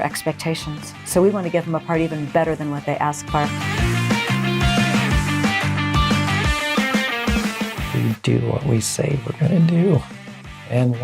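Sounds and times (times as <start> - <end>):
steady drum beat: 1.6 - 10.6
rock guitar: 3.4 - 8.1.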